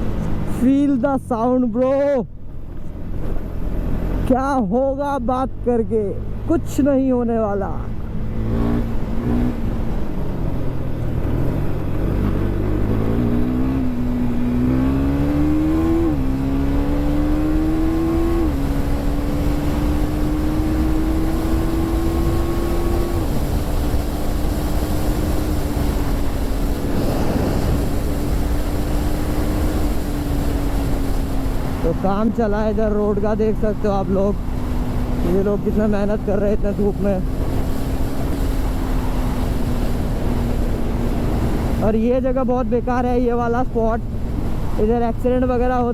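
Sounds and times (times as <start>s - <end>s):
motorcycle engine accelerating: 7.9s - 41.9s.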